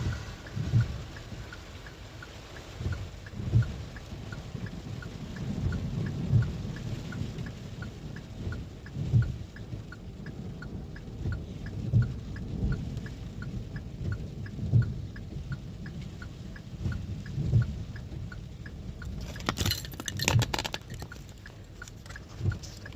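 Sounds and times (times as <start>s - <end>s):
rain: 0.0s - 22.9s
quick steady ticking: 13.4s - 22.9s
clattering: 19.2s - 22.2s.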